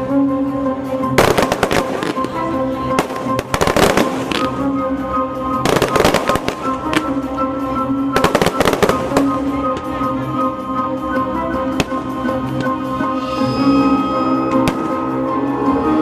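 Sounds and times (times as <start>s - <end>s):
dramatic background music: 0.0s - 16.0s.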